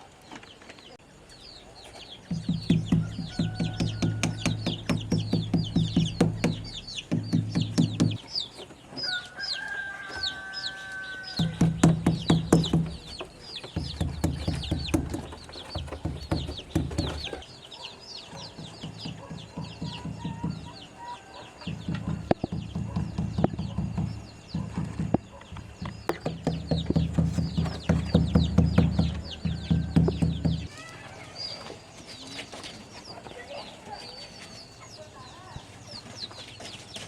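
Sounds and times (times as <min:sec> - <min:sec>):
chickens clucking: 0:00.0 - 0:37.0
chicks peeping: 0:00.0 - 0:37.0
rooster crowing: 0:02.7 - 0:06.8, 0:09.0 - 0:12.3, 0:19.8 - 0:22.3, 0:28.4 - 0:31.5.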